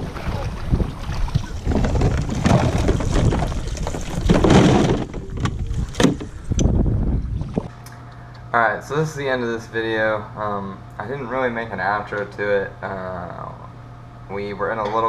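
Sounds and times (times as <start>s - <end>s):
wind buffeting microphone: 0.0s - 7.7s.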